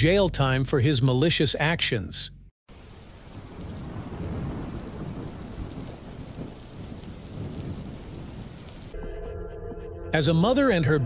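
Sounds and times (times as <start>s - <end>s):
rain patter: 2.7s - 9.0s
low rumbling thunder: 2.8s - 9.0s.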